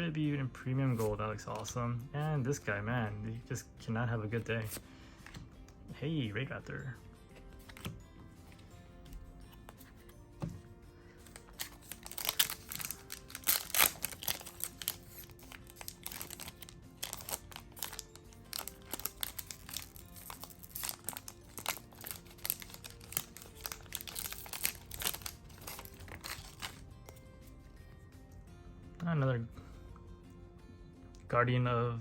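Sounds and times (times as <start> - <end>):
soft background music: 0.0 - 32.0
foil pack crinkling and tearing: 11.4 - 27.2.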